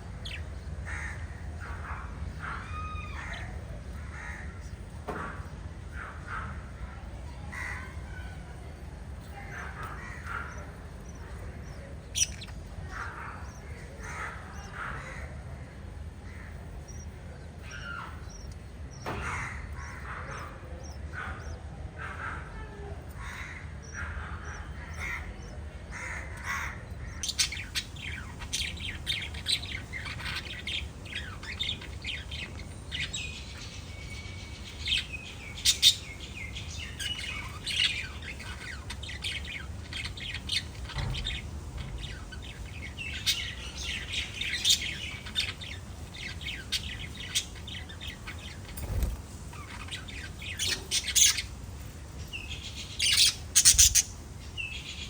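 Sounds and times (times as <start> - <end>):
parrots chirping and chattering: 0.0 - 55.0.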